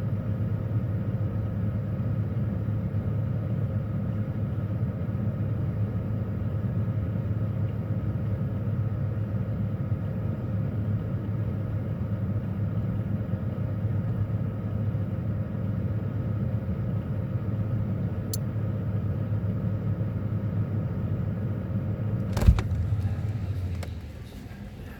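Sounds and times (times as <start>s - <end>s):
refrigerator humming: 22.0s - 24.9s.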